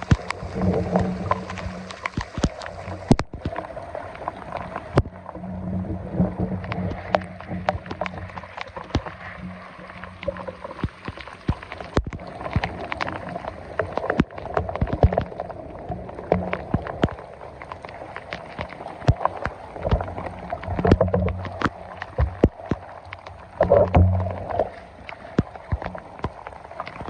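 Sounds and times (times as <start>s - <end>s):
water sloshing and gurgling: 0.0s - 27.0s
sharp knocks and clicks: 18.6s - 22.9s.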